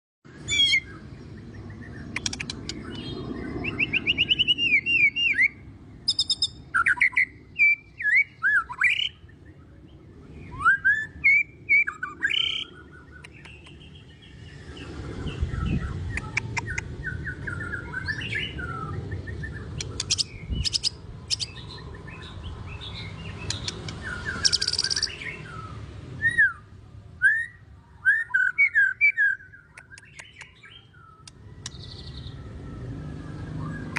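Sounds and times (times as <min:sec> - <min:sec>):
bird singing whistles and trills: 0:00.3 - 0:33.9.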